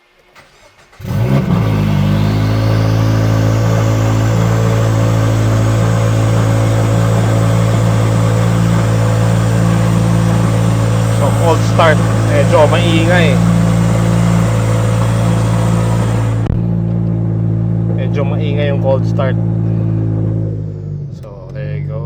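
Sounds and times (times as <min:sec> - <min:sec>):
car engine starting and idling: 0:00.0 - 0:22.0.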